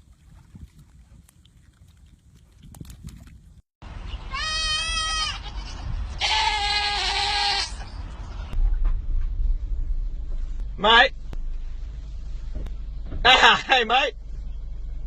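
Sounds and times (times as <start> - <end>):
animal crying: 4.2 - 7.9
low rumble: 7.8 - 15.0.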